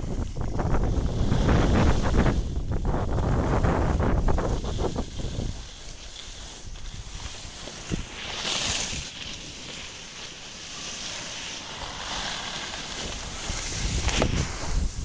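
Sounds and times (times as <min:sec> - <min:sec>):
wind buffeting microphone: 0:00.0 - 0:05.8, 0:12.6 - 0:15.0
skis scraping over snow: 0:00.1 - 0:15.0.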